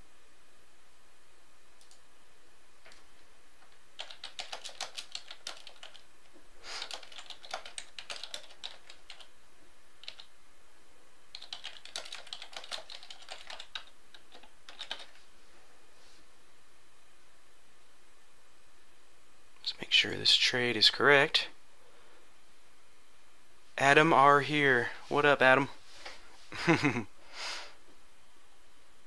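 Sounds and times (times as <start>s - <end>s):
computer keyboard typing: 4.0s - 6.1s, 6.8s - 9.3s, 10.0s - 10.3s, 11.3s - 15.2s.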